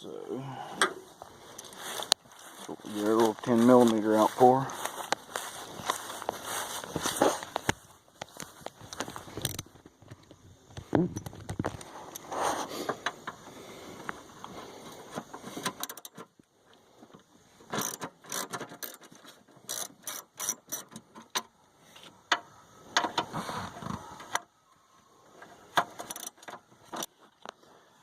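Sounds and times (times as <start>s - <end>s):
ratchet wrench clicking: 17.8s - 21.0s, 26.0s - 26.6s.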